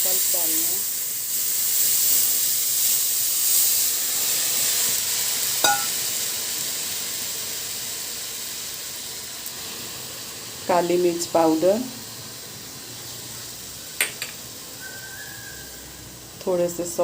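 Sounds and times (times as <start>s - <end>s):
food sizzling in oil: 0.0s - 17.0s
utensil clink: 5.6s - 6.0s.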